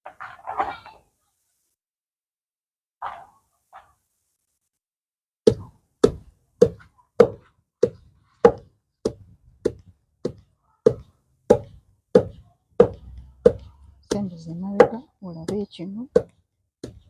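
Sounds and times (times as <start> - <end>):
pestle pounding in mortar: 5.5 - 17.0.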